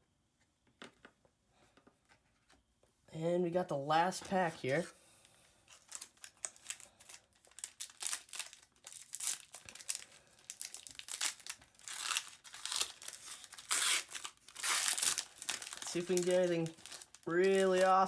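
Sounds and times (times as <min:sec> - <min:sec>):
plastic wrapper crinkling and tearing: 0:05.6 - 0:18.0.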